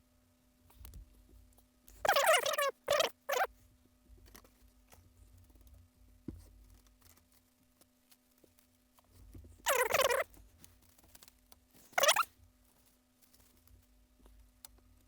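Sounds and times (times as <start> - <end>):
faint steady hum: 0.0 - 15.0
plastic panel parts squeaking: 2.0 - 3.5, 9.7 - 10.3, 11.8 - 12.3.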